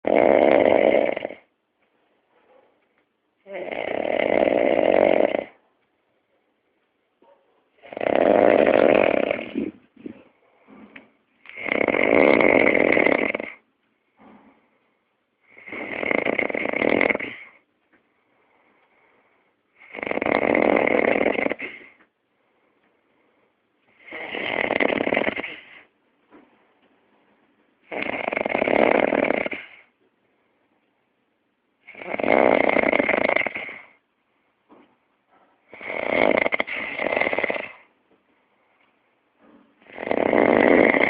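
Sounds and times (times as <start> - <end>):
pet snoring loudly: 0.0 - 1.5, 3.4 - 5.6, 7.8 - 10.1, 10.8 - 13.6, 15.4 - 17.6, 19.8 - 22.0, 23.9 - 25.9, 27.8 - 29.9, 31.8 - 34.0, 35.7 - 37.9, 39.8 - 41.0
quiet breathing: 8.9 - 19.9, 20.9 - 27.9, 29.4 - 31.2, 33.0 - 41.0.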